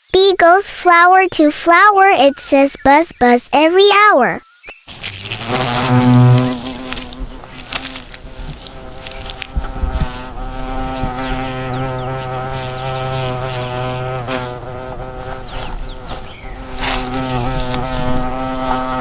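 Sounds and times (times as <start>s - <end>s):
bee buzzing: 4.9s - 19.0s.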